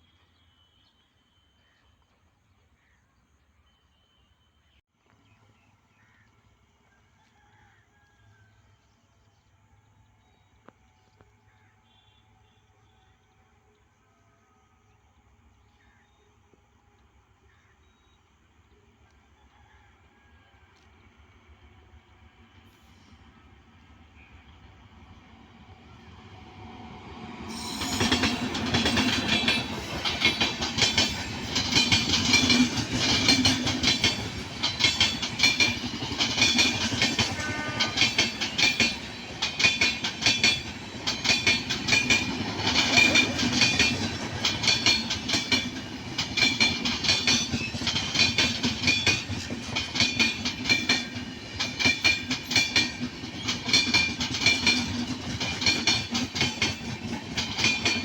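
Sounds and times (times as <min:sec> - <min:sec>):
train wheels clattering on rails: 0:27.1 - 0:58.0.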